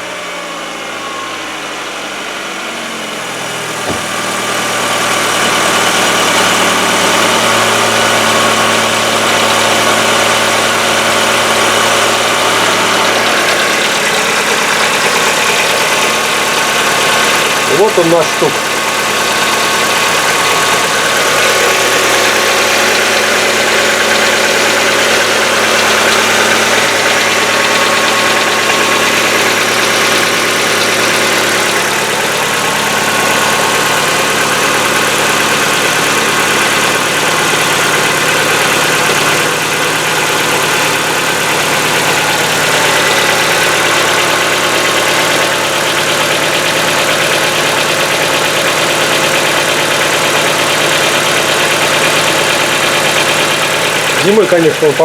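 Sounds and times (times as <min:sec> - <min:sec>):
car engine idling: 0:00.0 - 0:55.0
hydraulic lifters tapping: 0:03.8 - 0:04.8.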